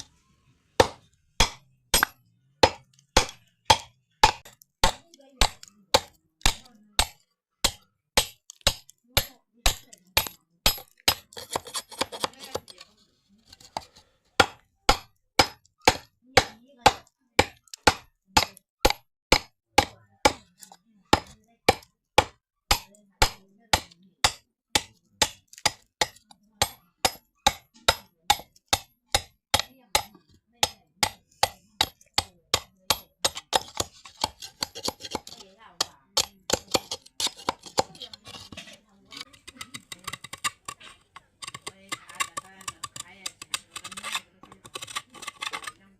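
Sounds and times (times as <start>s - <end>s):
hand tool knocking bamboo: 0.8s - 12.6s, 14.4s - 38.5s.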